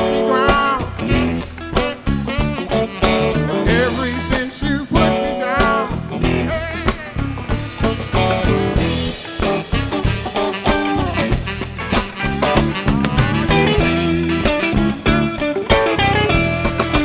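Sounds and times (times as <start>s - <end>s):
blues-soul band playing: 0.0s - 17.0s
electric guitar bending notes: 0.0s - 17.0s.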